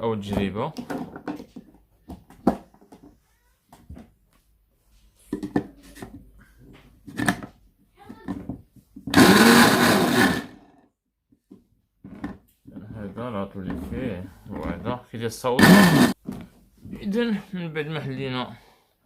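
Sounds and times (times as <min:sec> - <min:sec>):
blender motor running: 0:09.1 - 0:10.7, 0:15.6 - 0:16.2.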